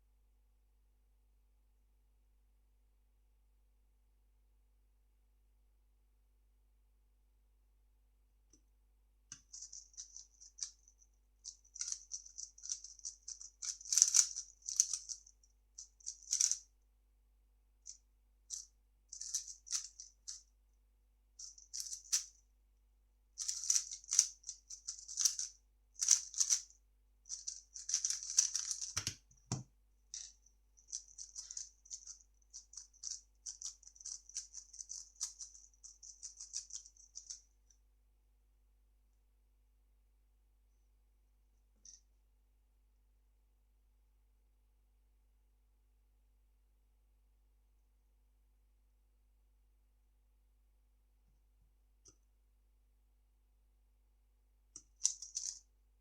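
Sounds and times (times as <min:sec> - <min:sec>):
puzzle cube clicking and rattling: 0:09.4 - 0:16.6, 0:19.2 - 0:20.4, 0:21.4 - 0:22.4, 0:23.4 - 0:26.7, 0:27.3 - 0:29.6, 0:30.2 - 0:37.4, 0:54.9 - 0:55.6.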